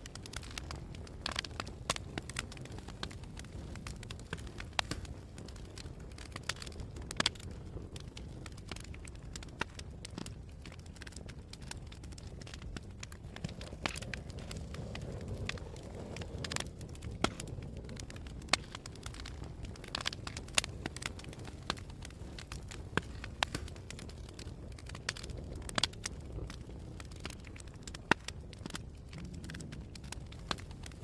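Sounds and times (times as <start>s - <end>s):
burning wood crackling: 0.0s - 31.0s
fire flames rumbling: 0.0s - 31.0s.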